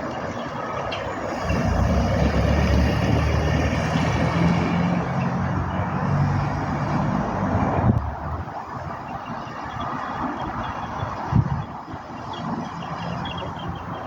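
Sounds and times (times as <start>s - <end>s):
car engine running: 1.3s - 4.9s.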